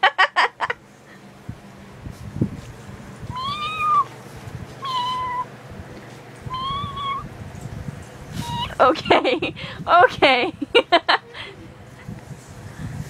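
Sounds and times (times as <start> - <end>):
cat meowing: 3.3 - 4.1, 4.8 - 5.5, 6.5 - 7.3.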